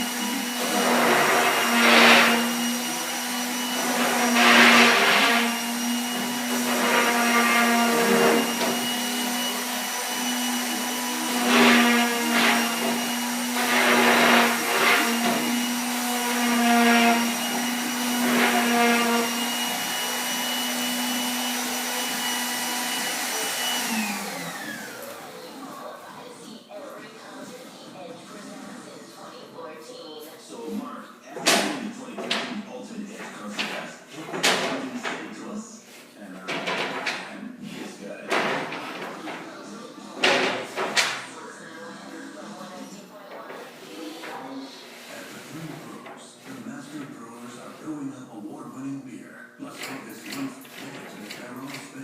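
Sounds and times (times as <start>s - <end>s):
electric sander on wood: 0.0s - 25.8s.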